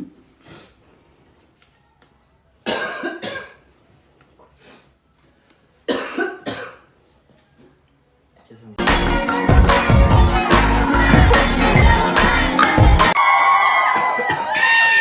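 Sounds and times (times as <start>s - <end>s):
man coughing harshly: 2.7s - 3.6s, 5.9s - 6.8s.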